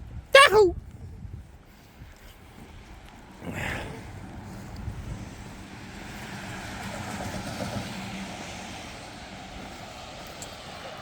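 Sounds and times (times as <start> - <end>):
vehicle engine hum: 1.8 - 11.0
tyres hissing on wet road: 2.4 - 11.0.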